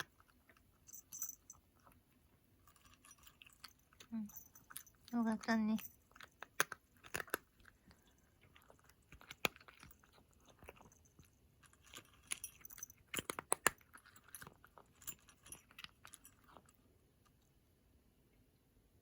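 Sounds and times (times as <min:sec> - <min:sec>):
cat chewing food: 0:00.0 - 0:17.7.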